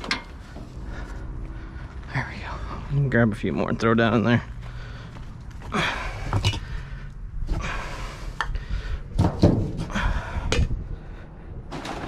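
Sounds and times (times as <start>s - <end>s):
rustling and scraping: 11.7s - 12.0s.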